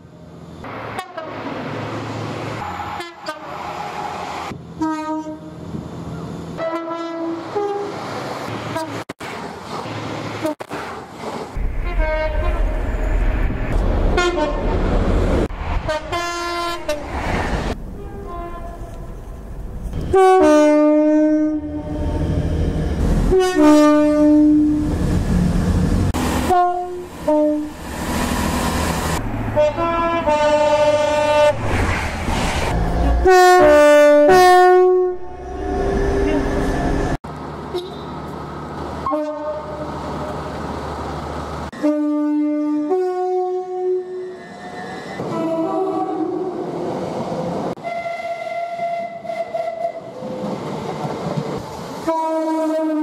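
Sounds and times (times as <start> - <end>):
rumble of passing trains: 0.0 - 53.0
train two-tone horn: 0.9 - 1.5, 2.6 - 4.2, 4.8 - 5.6, 6.6 - 8.0, 11.8 - 12.8, 14.1 - 14.8, 15.8 - 17.1, 18.0 - 19.0, 20.0 - 22.4, 23.3 - 25.0, 26.4 - 27.8, 29.6 - 31.6, 33.0 - 38.2, 39.0 - 39.9, 41.7 - 44.4, 45.2 - 46.6, 47.8 - 50.5, 52.0 - 53.0.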